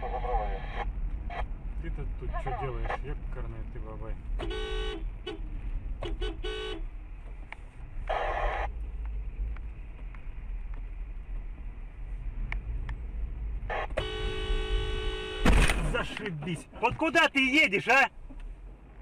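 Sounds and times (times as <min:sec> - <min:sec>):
car engine and tyres rumble: 0:00.0 - 0:19.0
car horn short beeps: 0:13.7 - 0:15.7.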